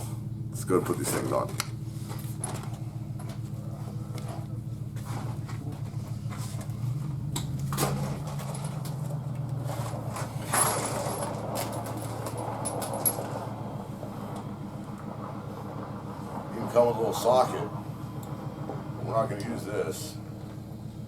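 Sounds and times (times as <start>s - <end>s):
motor humming: 0.0s - 21.0s
sharp knocks and clatter: 4.2s - 13.6s.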